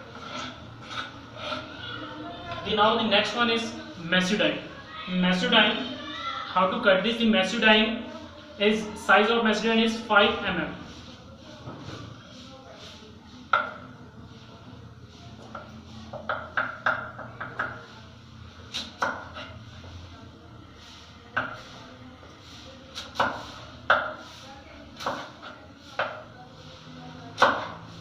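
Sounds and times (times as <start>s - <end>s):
knife chopping on cutting board: 23.0s - 24.2s, 25.0s - 25.4s, 27.4s - 27.8s.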